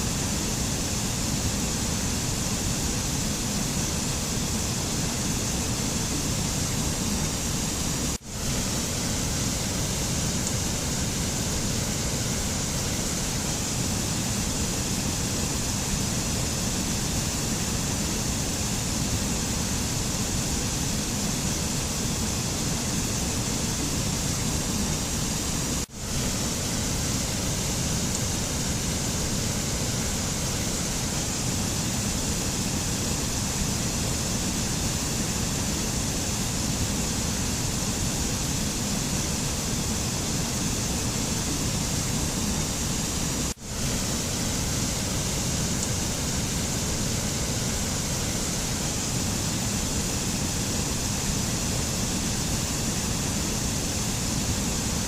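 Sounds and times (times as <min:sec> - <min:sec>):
steady rushing nature ambience: 0:00.0 - 0:55.0.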